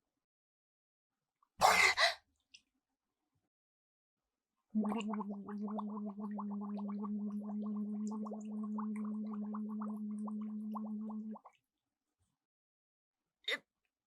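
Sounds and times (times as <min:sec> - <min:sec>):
person gargling: 0:04.8 - 0:11.4.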